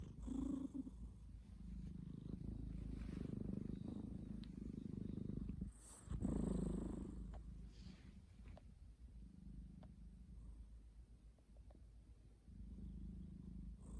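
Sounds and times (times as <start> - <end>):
cat snoring: 0.0 - 1.1, 1.7 - 8.0.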